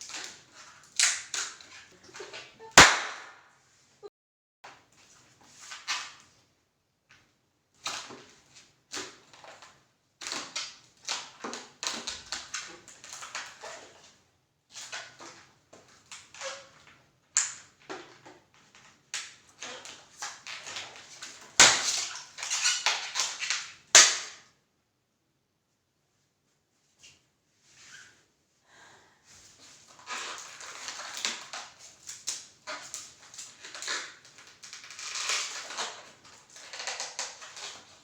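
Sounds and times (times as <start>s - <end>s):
rubber balloons crackling: 0.3s - 3.4s
balloons popping: 2.2s - 3.4s.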